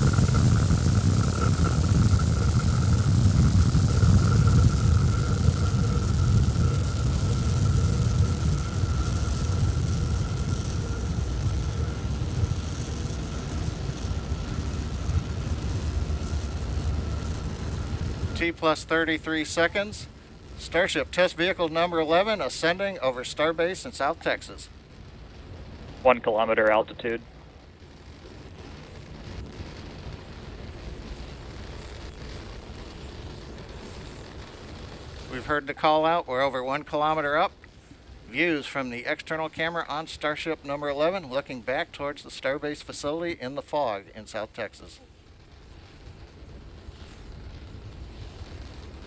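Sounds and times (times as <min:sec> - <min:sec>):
faint crackling: 0:00.0 - 0:49.0
rocket engines rumbling: 0:00.0 - 0:49.0.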